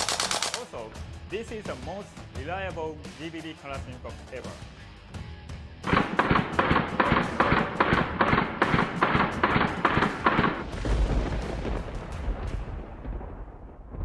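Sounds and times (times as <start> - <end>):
sharp gunshot bangs: 5.9 - 10.6.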